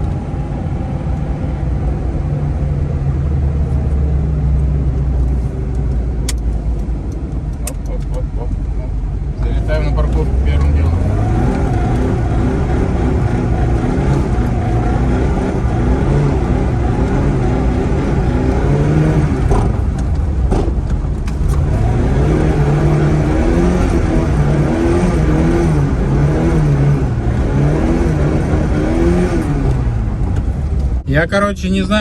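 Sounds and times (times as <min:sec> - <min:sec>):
car engine revving: 0:00.0 - 0:31.1
sharp clicks: 0:05.7 - 0:08.2.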